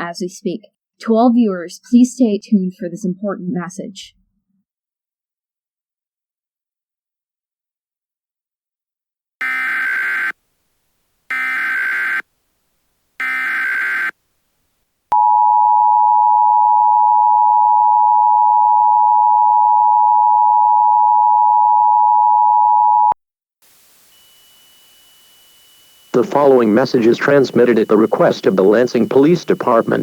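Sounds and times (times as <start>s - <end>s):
digital data bursts: 24.2s - 30.0s
two-tone attention signal: 25.7s - 30.0s.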